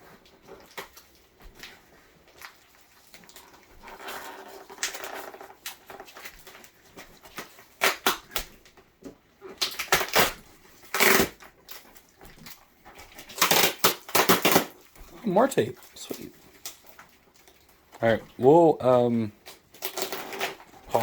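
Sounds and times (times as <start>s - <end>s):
packing tape ripping off cardboard: 3.8s - 8.6s, 9.5s - 11.5s, 13.1s - 15.0s, 19.5s - 21.0s.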